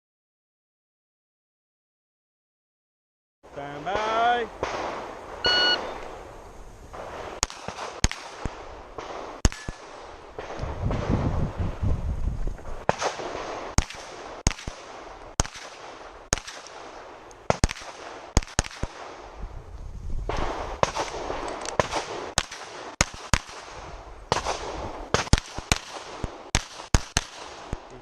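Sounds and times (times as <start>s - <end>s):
pistol shots: 3.9s - 6.2s, 7.0s - 11.0s, 12.8s - 19.2s, 20.3s - 27.9s.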